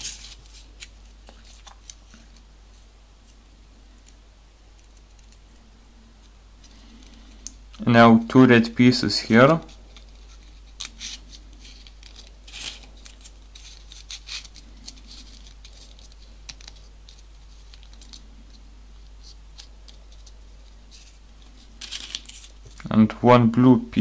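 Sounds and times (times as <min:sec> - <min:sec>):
paper rustling: 0:00.0 - 0:03.4, 0:09.2 - 0:22.9
small paper clicks: 0:09.9 - 0:21.2.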